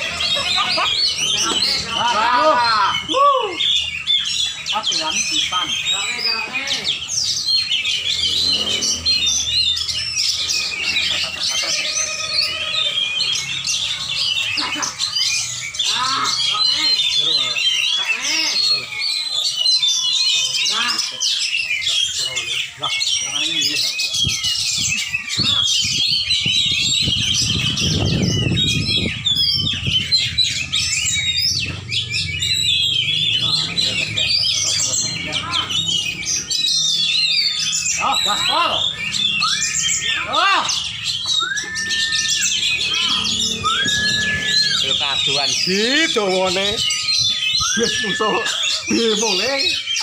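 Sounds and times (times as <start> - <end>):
bird singing chirps and whistles: 0.0 - 50.0
low rumble: 26.8 - 34.0.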